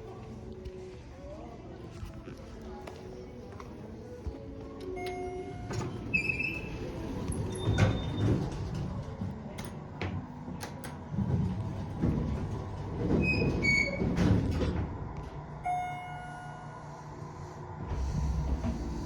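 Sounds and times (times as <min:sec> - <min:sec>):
elevator rumble: 0:02.6 - 0:19.0
elevator door clicks and knocks: 0:07.4 - 0:15.3.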